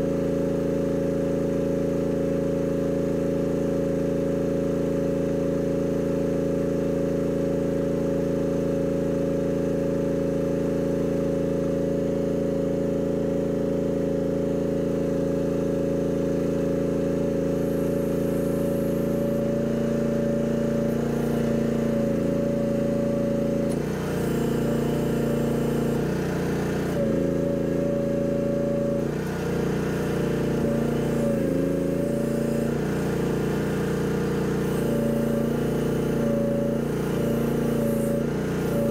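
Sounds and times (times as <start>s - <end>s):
excavator engine running: 16.2s - 38.9s.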